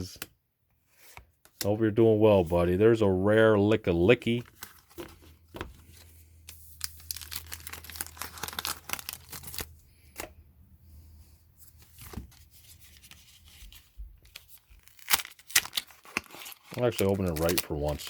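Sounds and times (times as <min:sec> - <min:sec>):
foil packaging crinkling and ripping: 0:04.2 - 0:09.8, 0:13.0 - 0:18.0.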